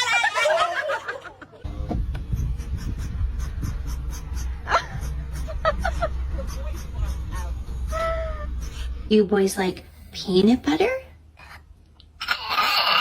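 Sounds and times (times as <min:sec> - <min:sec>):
steady low rumble: 0:01.6 - 0:12.1
dog panting: 0:02.2 - 0:08.9.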